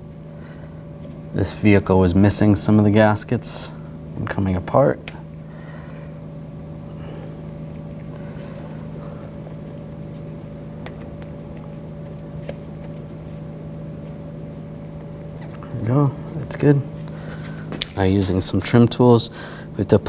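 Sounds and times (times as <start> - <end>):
low machine hum: 0.0 - 20.0.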